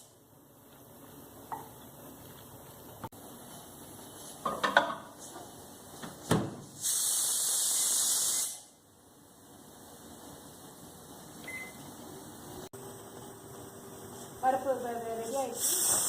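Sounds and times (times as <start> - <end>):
pressure cooker steam hiss: 6.7 - 8.8, 15.1 - 16.0.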